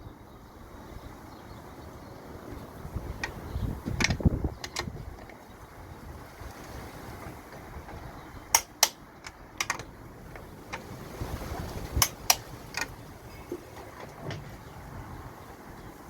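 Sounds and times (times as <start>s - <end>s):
torque wrench clicking: 8.5s - 9.9s.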